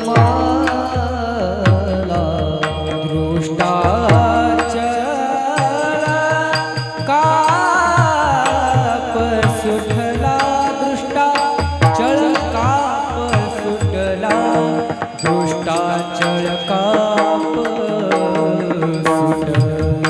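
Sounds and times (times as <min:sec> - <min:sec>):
held instrument notes: 0:00.0 - 0:20.0
man singing: 0:00.0 - 0:20.0.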